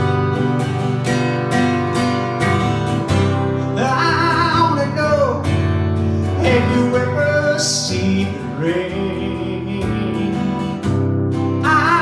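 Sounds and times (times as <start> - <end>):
sustained bass and chords: 0.0 - 7.5
strummed acoustic guitar: 0.0 - 12.0.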